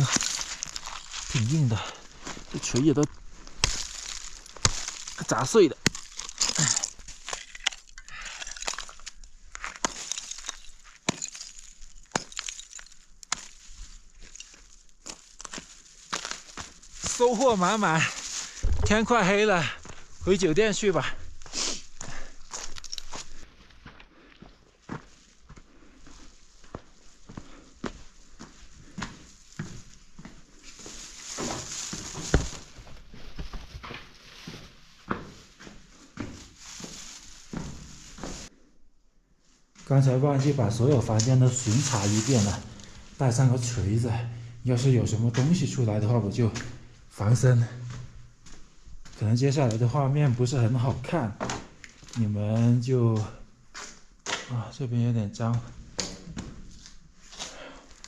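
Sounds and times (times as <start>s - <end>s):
hammer cracking ice: 0.0s - 1.4s, 3.6s - 13.5s
footsteps walking: 0.0s - 7.9s, 8.5s - 38.5s, 39.6s - 43.9s, 44.8s - 54.5s, 55.5s - 58.0s
ice shards crunching: 0.0s - 19.0s, 21.6s - 23.4s, 30.7s - 32.7s, 41.2s - 43.1s
loud thump: 18.6s - 19.3s.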